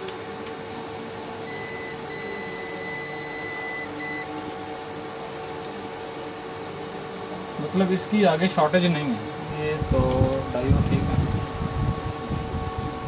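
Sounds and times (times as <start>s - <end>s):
steady hum: 0.0s - 13.0s
multimeter beeping: 1.5s - 4.3s.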